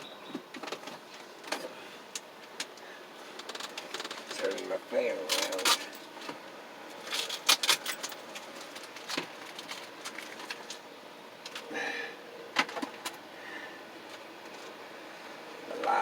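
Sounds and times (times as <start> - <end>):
fan handling clicks and knocks: 12.5 - 13.2.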